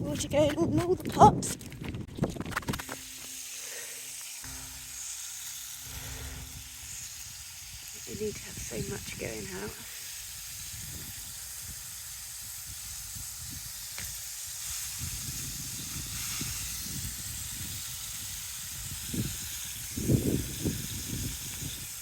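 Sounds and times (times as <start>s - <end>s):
water spraying from hose: 2.2s - 22.0s
low rumbling: 4.4s - 9.8s.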